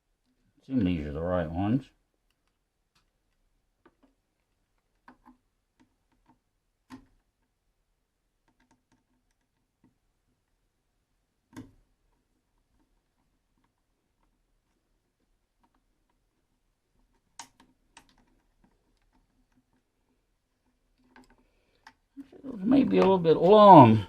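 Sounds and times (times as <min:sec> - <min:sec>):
small plastic clicks and taps: 0:02.2 - 0:07.6, 0:08.4 - 0:10.6, 0:11.4 - 0:22.2.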